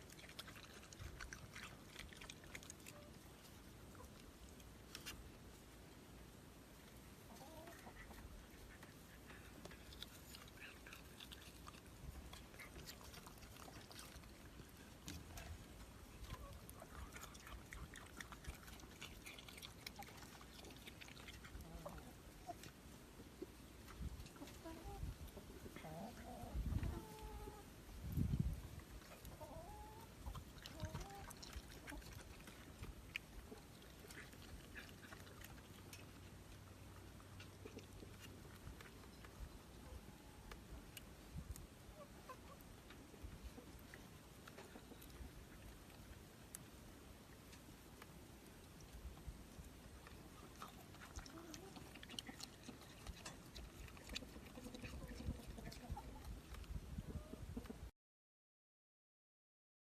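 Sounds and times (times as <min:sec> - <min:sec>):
animal clucking calls: 0:07.3 - 0:22.8, 0:23.9 - 0:27.7, 0:29.0 - 0:40.6, 0:41.9 - 0:46.0, 0:50.0 - 0:56.4, 0:57.1 - 0:57.9.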